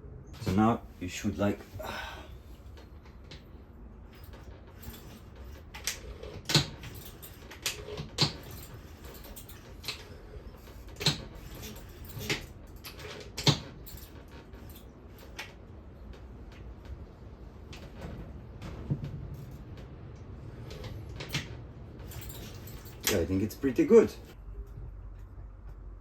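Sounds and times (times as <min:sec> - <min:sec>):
metal parts and tools clicking: 0:04.1 - 0:17.1, 0:17.7 - 0:24.3.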